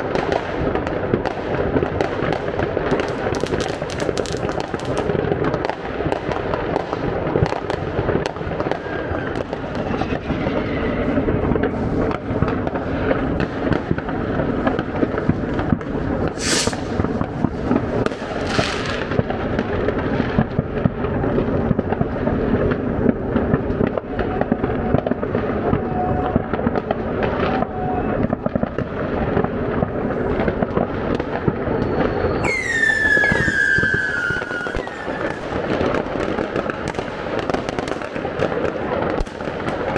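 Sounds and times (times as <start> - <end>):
fireworks crackling bangs: 0.0 - 39.9
falling firework whistle: 8.6 - 11.9, 16.3 - 17.1, 31.5 - 35.6
hissing bursts: 16.4 - 17.0.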